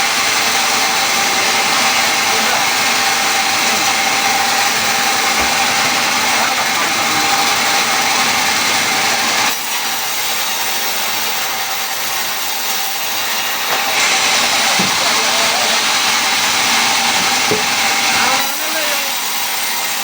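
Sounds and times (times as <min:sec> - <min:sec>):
power tool cutting wood: 0:00.0 - 0:20.0.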